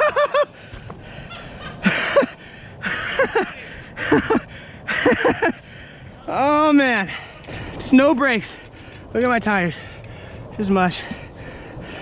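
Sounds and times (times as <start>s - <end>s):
person panting with gasps: 0.4s - 6.2s, 9.7s - 12.0s.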